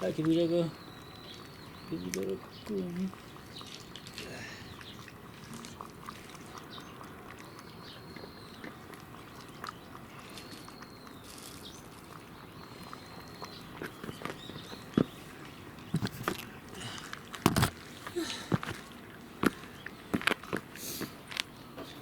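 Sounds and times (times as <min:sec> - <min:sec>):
cat chewing food: 0:04.8 - 0:18.0.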